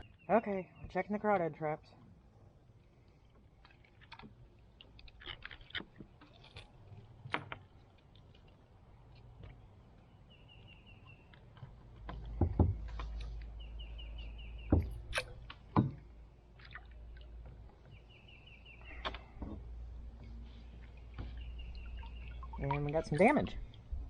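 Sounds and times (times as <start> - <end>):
hollow knocks against kayak: 12.0 - 13.2, 14.7 - 15.0, 15.7 - 16.0.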